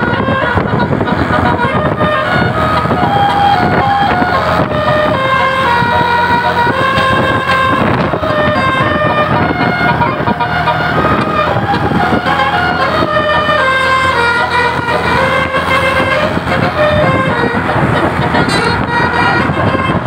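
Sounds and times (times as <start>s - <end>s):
bus horn playing a tune: 0.0s - 20.0s
bus rumble: 0.0s - 20.0s.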